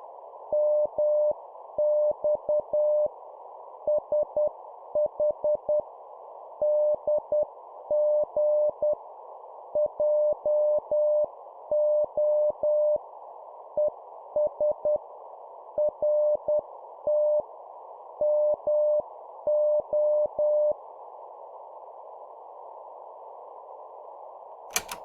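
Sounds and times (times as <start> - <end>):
morse code beeps: 24.7 - 25.0.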